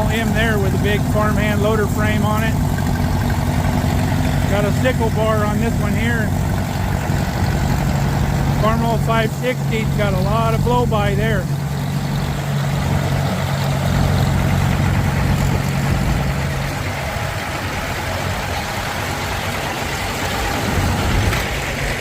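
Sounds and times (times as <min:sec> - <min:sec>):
tractor engine idling: 0:00.0 - 0:22.0.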